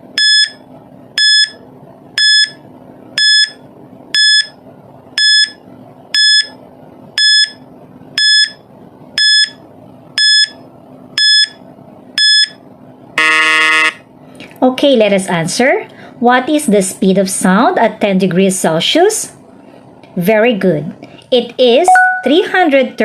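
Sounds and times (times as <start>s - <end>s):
faint steady hum: 0.0s - 23.0s
electronic timer beeping: 0.2s - 0.6s, 1.2s - 1.6s, 2.2s - 2.6s, 3.2s - 3.6s, 4.2s - 4.5s, 5.2s - 5.6s, 6.2s - 6.6s, 7.2s - 7.6s, 8.2s - 8.6s, 9.2s - 9.6s, 10.2s - 10.6s, 11.2s - 11.6s, 12.2s - 12.6s, 21.9s - 22.4s.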